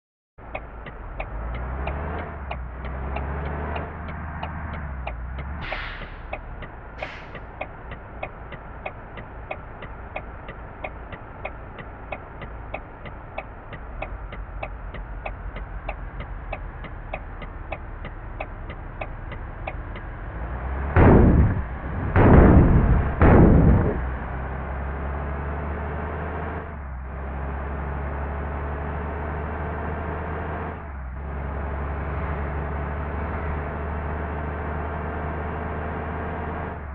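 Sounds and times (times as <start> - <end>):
regular ticking: 0.4 - 25.5
bus engine humming: 0.4 - 36.9
short air hisses: 5.6 - 6.3, 7.0 - 7.4.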